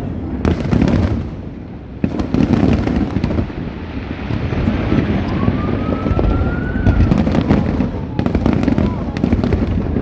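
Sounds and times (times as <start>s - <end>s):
fireworks booming and crackling: 0.0s - 10.0s
fireworks sharp crack: 0.0s - 10.0s
rising firework whistle: 4.0s - 10.0s.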